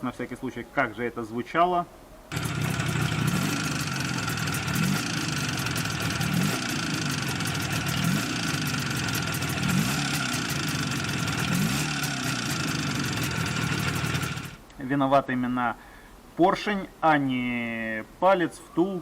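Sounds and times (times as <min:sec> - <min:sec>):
motorcycle engine throttle blips: 0:02.3 - 0:14.6.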